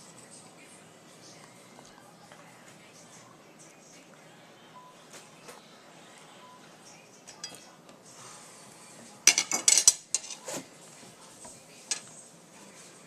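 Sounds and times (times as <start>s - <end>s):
dishes and utensils clattering: 7.3s - 7.6s, 9.2s - 10.7s, 11.4s - 12.2s.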